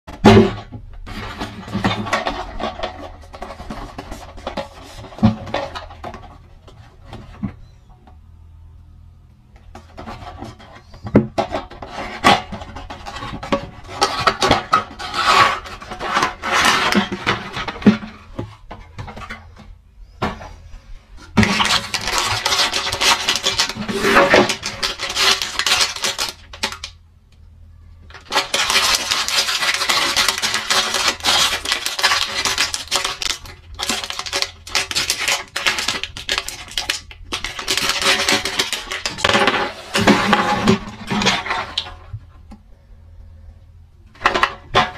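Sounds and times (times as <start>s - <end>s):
scratching and crackling: 9.6s - 20.6s, 21.2s - 27.4s, 28.1s - 42.6s.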